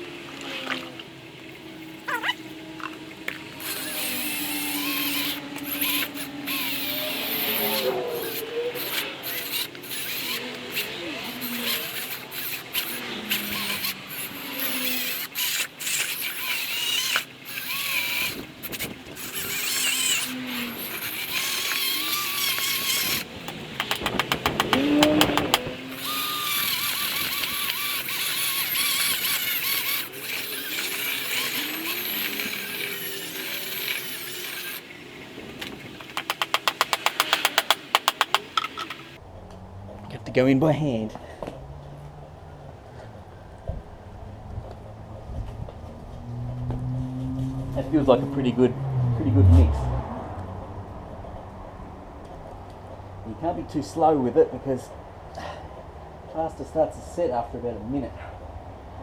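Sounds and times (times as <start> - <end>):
quick rattling clicks: 23.1 - 26.2, 35.6 - 39.2
plaster stirred in plastic bucket: 23.5 - 25.6.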